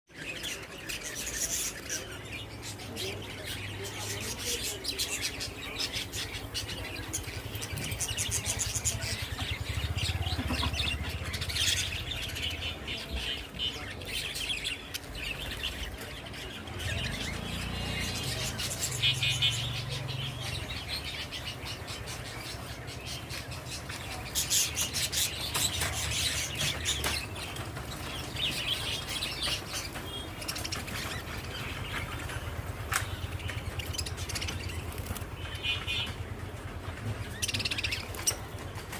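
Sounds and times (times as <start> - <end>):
small birds chirping: 0.1 - 38.9
wings fluttering: 24.7 - 38.9.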